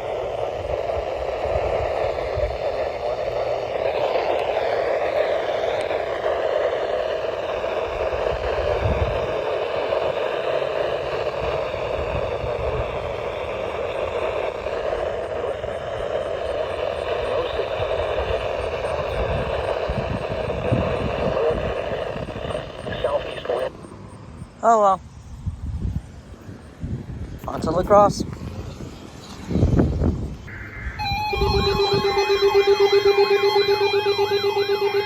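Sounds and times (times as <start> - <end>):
radio static hiss: 0.0 - 23.7, 30.4 - 35.0
faint wavering broadcast: 30.5 - 35.0.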